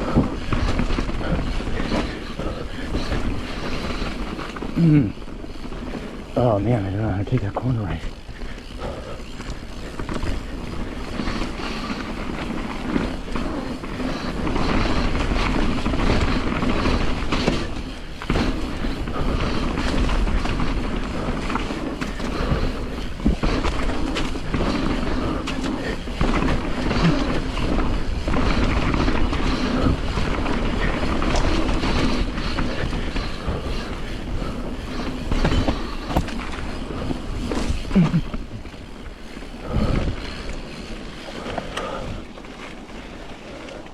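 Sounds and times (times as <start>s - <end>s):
bike tyres on dirt: 0.0s - 43.9s.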